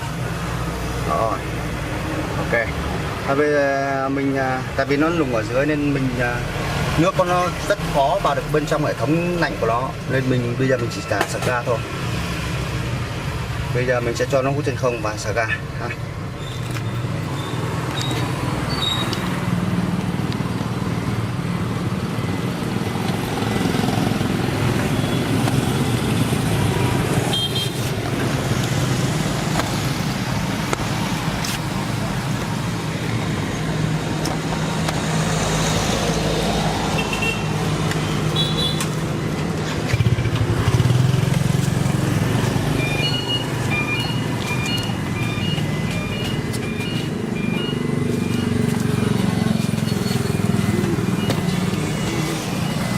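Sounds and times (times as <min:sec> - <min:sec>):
road traffic rumble: 0:00.0 - 0:52.9
short high beeps: 0:42.7 - 0:52.9.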